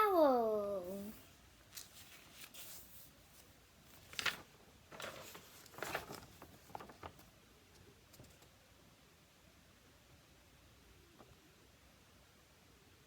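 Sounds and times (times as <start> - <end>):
soft rustling: 0.8 - 7.3.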